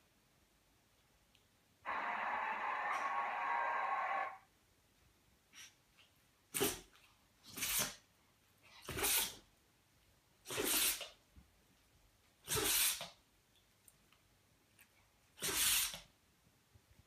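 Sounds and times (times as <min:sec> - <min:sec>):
dog sneezing: 0:06.5 - 0:06.9, 0:07.5 - 0:08.1, 0:08.7 - 0:09.5, 0:10.4 - 0:11.2, 0:12.4 - 0:13.2, 0:15.4 - 0:16.1.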